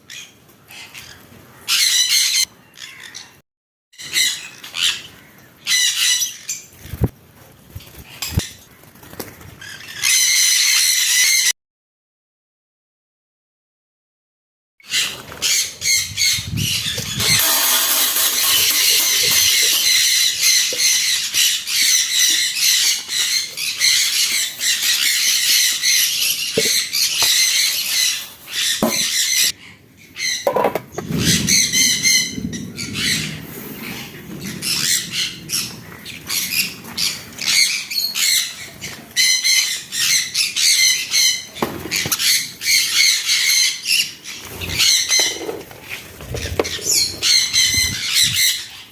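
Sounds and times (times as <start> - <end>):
birds chattering and squawking: 0.0 - 3.4, 4.0 - 7.1, 7.8 - 11.5, 14.9 - 48.9
sharp knocks: 28.8 - 29.2.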